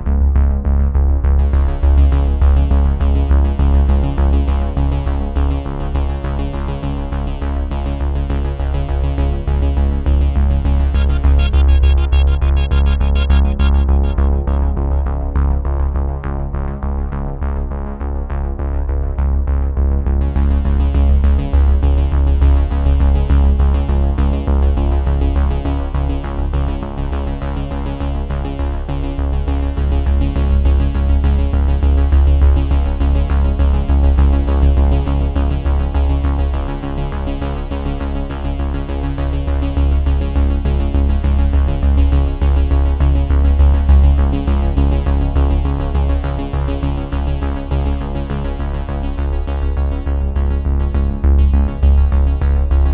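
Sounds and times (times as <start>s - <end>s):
pulsing bass: 0.0s - 52.9s
electronic synthesizer music: 10.6s - 15.8s.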